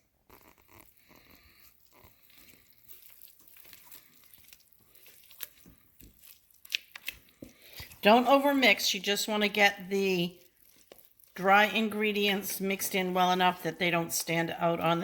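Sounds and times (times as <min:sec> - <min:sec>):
batter squishing in bowl: 0:00.0 - 0:15.0.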